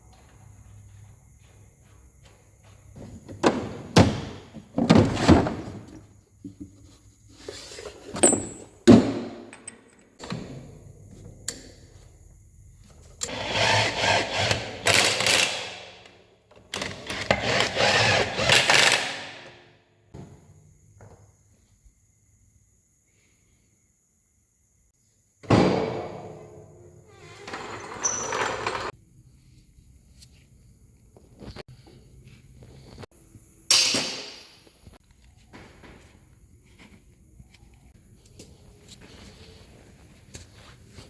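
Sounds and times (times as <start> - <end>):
power tool bursts: 16.9 - 19.4.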